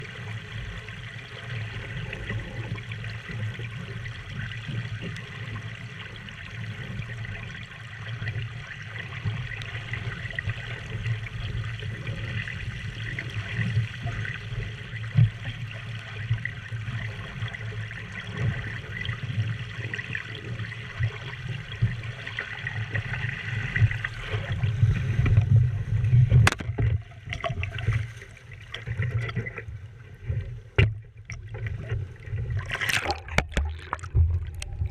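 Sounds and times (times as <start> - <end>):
water rushing along hull: 0.0 - 34.9
low rumble: 30.6 - 34.9.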